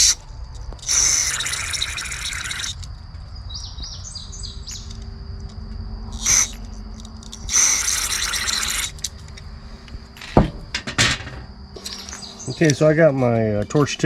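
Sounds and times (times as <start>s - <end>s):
bird chirping high notes: 3.4s - 5.0s, 11.8s - 12.9s.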